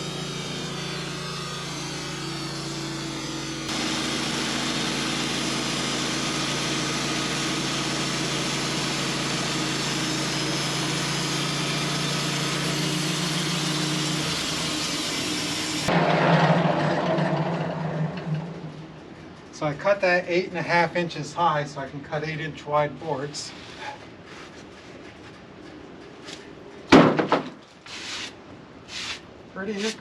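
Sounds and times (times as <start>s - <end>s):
saw blade cutting log: 0.0s - 18.0s, 27.9s - 30.0s
sawmill engine running: 0.0s - 19.8s.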